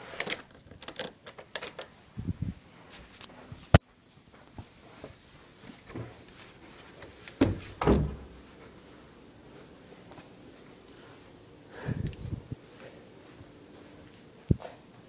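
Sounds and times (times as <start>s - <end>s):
door thuds and knocks: 7.4s - 8.4s.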